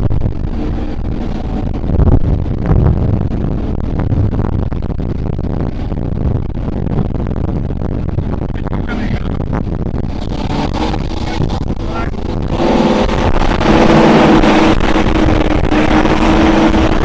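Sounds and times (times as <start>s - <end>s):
powerboat engines running: 0.0s - 17.0s
wind buffeting microphone: 0.0s - 17.0s.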